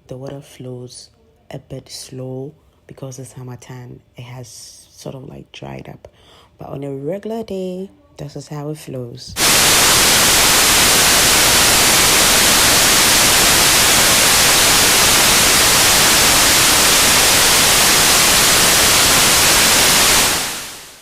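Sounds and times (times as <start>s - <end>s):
waterfall rushing: 9.4s - 21.0s.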